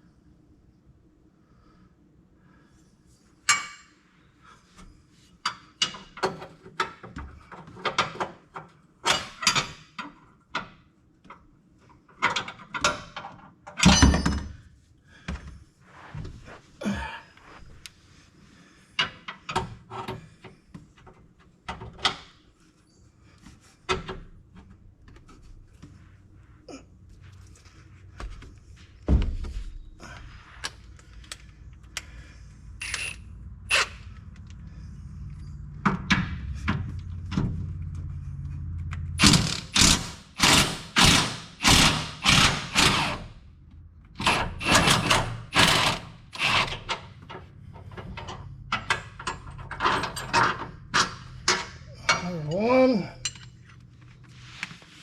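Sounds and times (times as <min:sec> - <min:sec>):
low steady hum: 0:13.9 - 0:40.6, 0:41.9 - 0:55.0
socket ratchet strokes: 0:32.8 - 0:34.1, 0:39.2 - 0:43.3, 0:44.2 - 0:47.2
tools clinking and knocking: 0:44.2 - 0:54.0.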